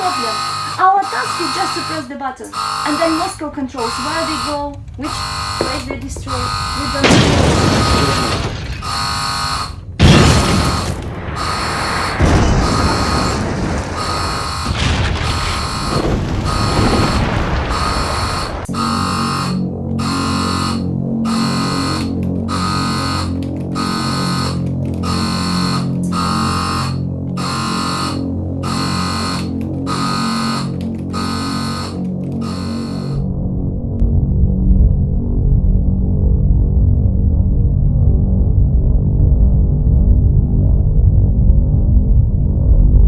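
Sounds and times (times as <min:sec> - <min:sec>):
electronic alarm beeping: 0:00.0 - 0:33.3
low steady drone: 0:00.0 - 0:43.0
loud rough rumbling: 0:03.4 - 0:24.4.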